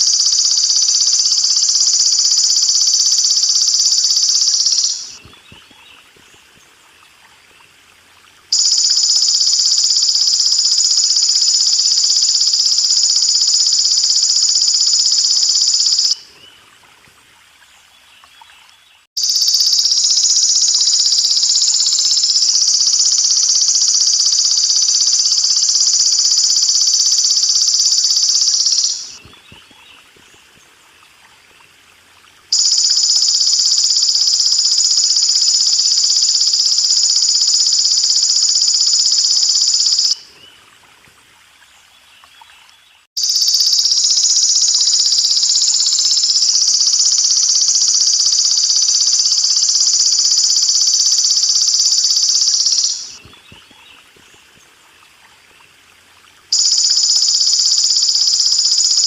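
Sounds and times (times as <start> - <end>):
insect buzzing trill: 0.0 - 5.2, 8.5 - 16.2, 19.2 - 29.2, 32.5 - 40.2, 43.2 - 53.2, 56.5 - 59.0
water trickling: 2.1 - 13.5, 14.8 - 19.1, 26.3 - 33.0, 40.2 - 43.1, 53.2 - 56.9.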